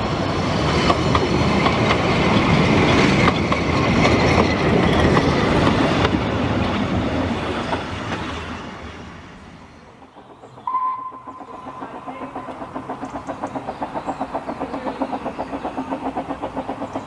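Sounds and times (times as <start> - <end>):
train rumbling past: 0.0 - 17.0
short steady tone: 10.6 - 12.7.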